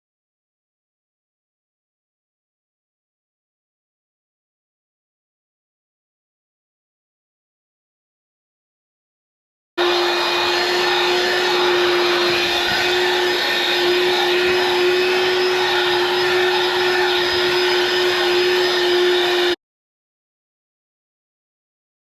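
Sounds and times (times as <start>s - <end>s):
handheld vacuum running: 9.8s - 19.6s.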